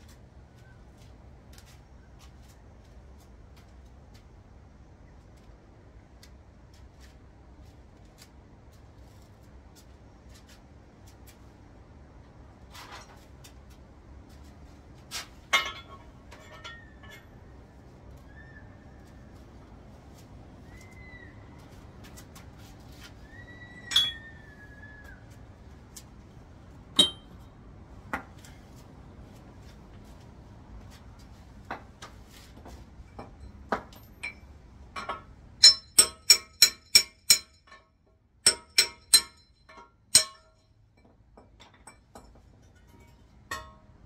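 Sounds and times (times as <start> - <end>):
metal tools clinking and tapping: 15.4 - 17.4, 23.9 - 24.3, 27.0 - 27.4, 33.0 - 37.9, 38.5 - 43.9
ringing metal strikes: 23.9 - 24.3, 27.0 - 27.4, 35.6 - 37.8, 38.5 - 40.7.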